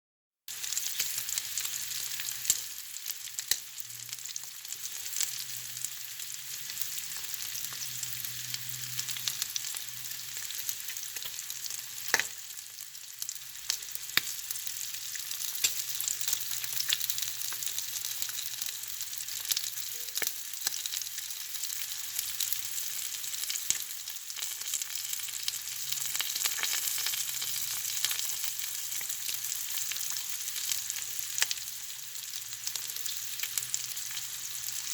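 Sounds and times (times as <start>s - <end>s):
bacon sizzling in a pan: 0.5s - 34.9s.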